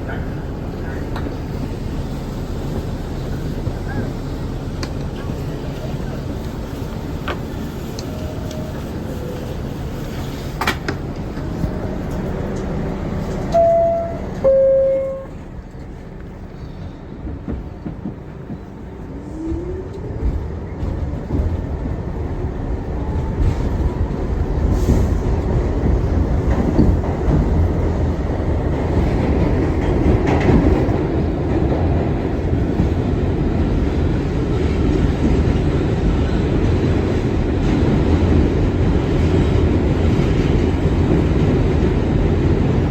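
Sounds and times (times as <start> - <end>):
train wheels clacking on rails: 10.0 - 42.9.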